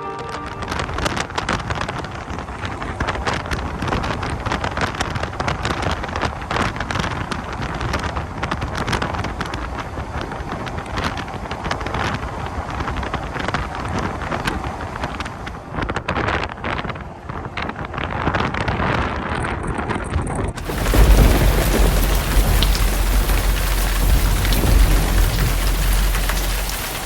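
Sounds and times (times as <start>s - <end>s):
wind buffeting microphone: 0.7s - 27.0s
sharp crackles: 20.6s - 27.0s.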